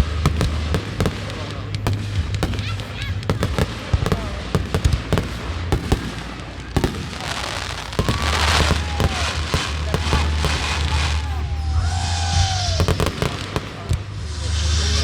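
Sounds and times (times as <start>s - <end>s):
firework bangs and pops: 0.0s - 15.0s
hissing firework crackle: 0.0s - 15.0s
low rumble: 0.0s - 15.0s
firework whistles sliding down: 7.2s - 15.0s.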